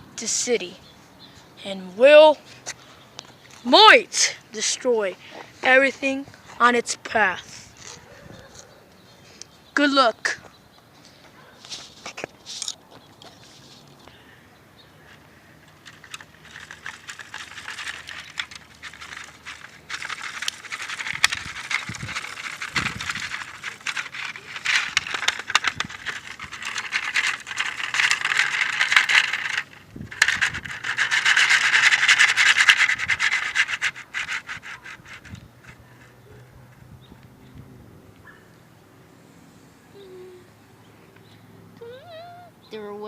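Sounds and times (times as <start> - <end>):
plastic bricks rattling and clattering: 15.7 - 35.8.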